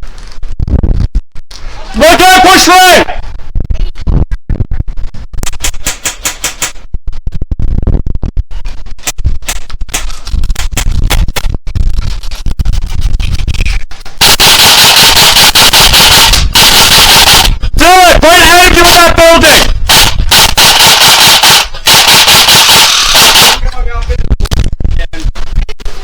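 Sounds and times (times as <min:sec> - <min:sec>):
wind on microphone: 0:00.0 - 0:02.0, 0:02.9 - 0:26.0
airsoft guns firing: 0:05.6 - 0:06.8.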